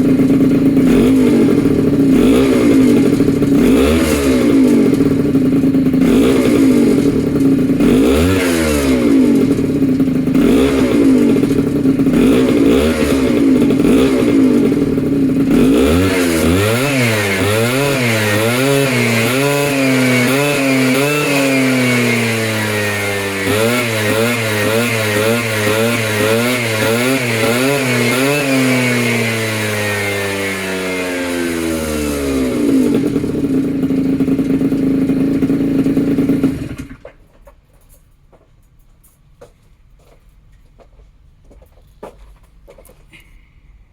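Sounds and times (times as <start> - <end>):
small two-stroke engine revving: 0.0 - 37.1.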